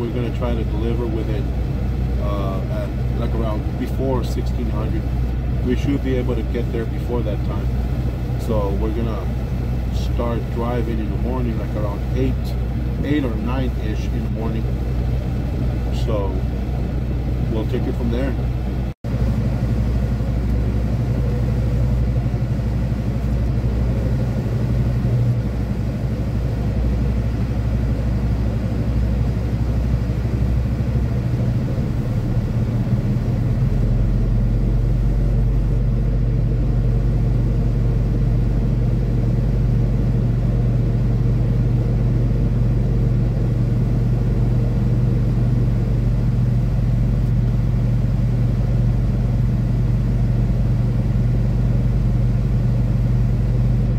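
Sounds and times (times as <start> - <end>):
diesel truck engine running: 0.0 - 53.9.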